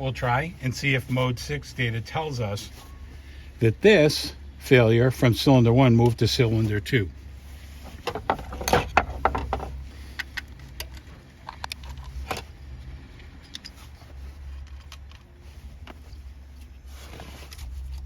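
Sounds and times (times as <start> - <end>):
low steady hum: 0.0 - 18.0
tools and engine parts clicking: 7.8 - 16.3.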